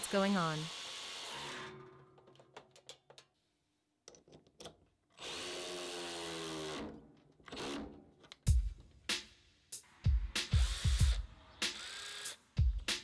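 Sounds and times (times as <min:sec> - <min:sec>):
cordless ratchet motor running: 0:11.7 - 0:12.4.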